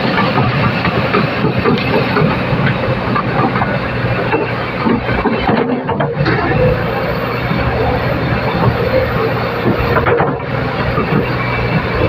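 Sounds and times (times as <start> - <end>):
metallic knocks and clatter: 0.0 - 6.6
excavator diesel engine running: 0.0 - 12.0.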